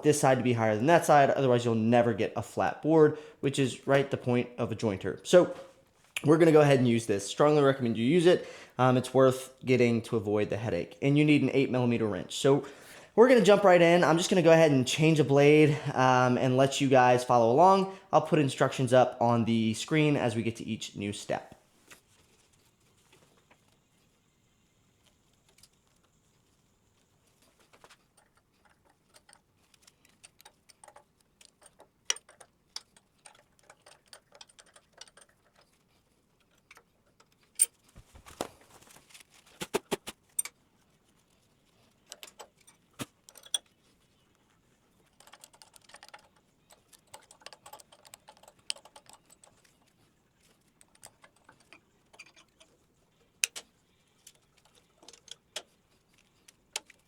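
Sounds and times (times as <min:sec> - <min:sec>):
metallic clicks and clinks: 0:28.1 - 0:35.8, 0:42.0 - 0:43.8, 0:45.0 - 0:52.7.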